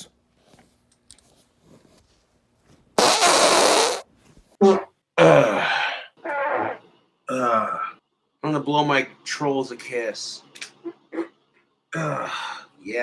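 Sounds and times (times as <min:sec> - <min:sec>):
loud fart: 0:03.0 - 0:04.9.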